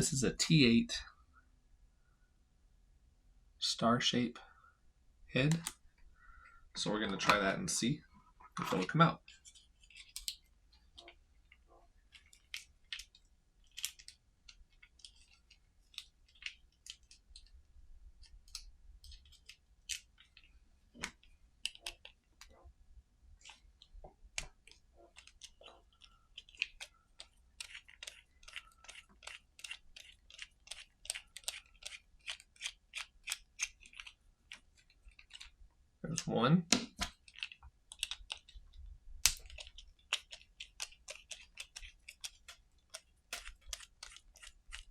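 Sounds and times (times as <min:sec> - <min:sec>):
screwdriver clicking and scraping metal: 0:24.4 - 0:35.6, 0:37.0 - 0:44.9.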